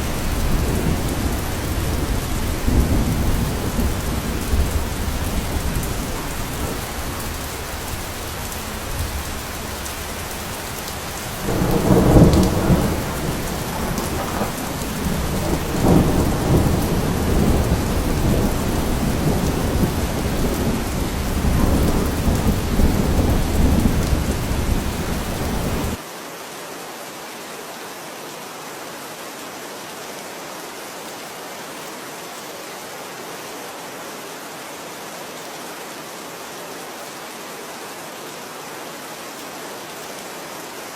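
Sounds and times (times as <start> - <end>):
steady rain: 0.0 - 40.9
thunder clap and rumbling: 11.2 - 26.0.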